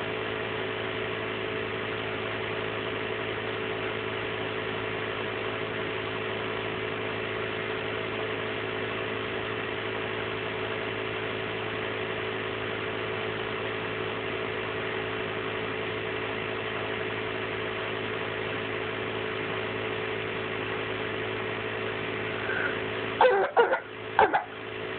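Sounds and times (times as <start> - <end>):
small motor humming: 22.2 - 24.5.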